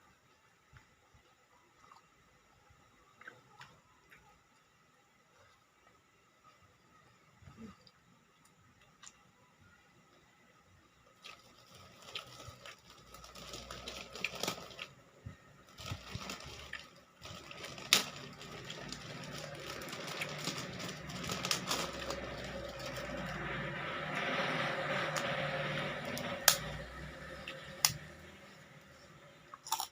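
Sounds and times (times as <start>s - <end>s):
chewing and crunching: 11.2s - 15.0s, 29.5s - 29.9s
small clicks and crackles: 11.2s - 15.0s, 15.6s - 23.4s.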